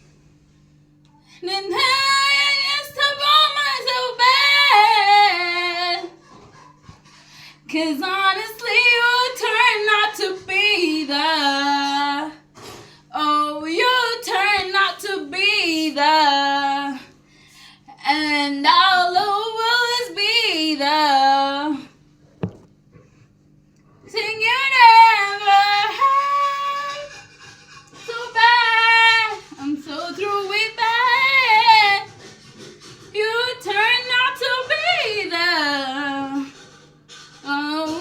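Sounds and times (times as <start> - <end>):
faint steady hum: 0.0 - 38.0
woman singing: 1.4 - 6.2, 7.6 - 12.4, 13.1 - 17.2, 17.9 - 21.9, 24.1 - 27.2, 28.0 - 32.1, 33.1 - 36.6, 37.4 - 38.0.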